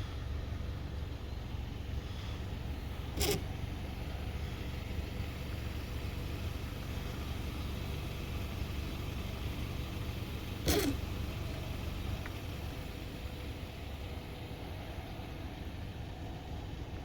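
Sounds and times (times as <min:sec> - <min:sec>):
vehicle rumble inside car: 0:00.0 - 0:17.0.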